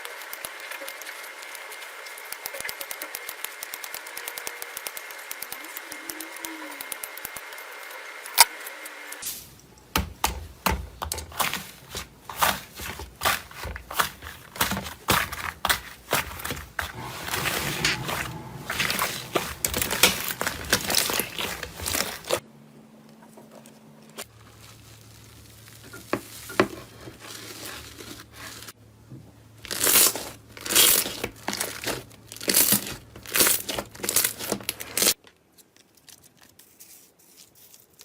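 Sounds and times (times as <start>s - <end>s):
crackle: 23.7s - 28.8s.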